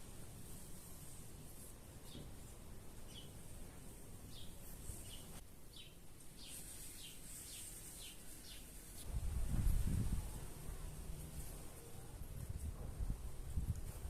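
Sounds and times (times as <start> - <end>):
faint hiss: 0.0 - 14.0
bird chirping: 2.0 - 3.6, 4.2 - 9.0.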